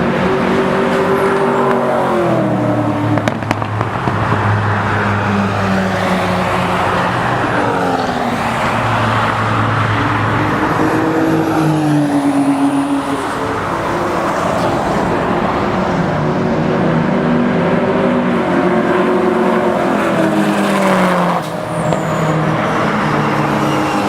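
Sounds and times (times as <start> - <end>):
race cars passing at high revs: 0.0 - 24.0.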